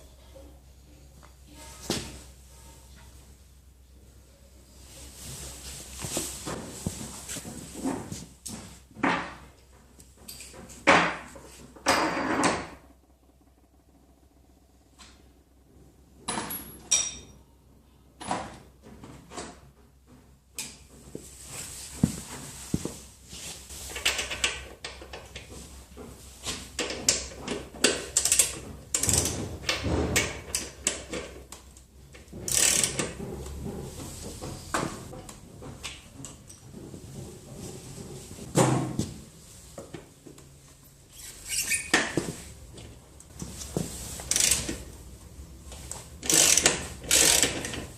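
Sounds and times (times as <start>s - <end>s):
tools clicking and knocking on metal: 9.0s - 12.8s, 16.2s - 17.4s, 26.8s - 37.0s, 46.2s - 47.9s.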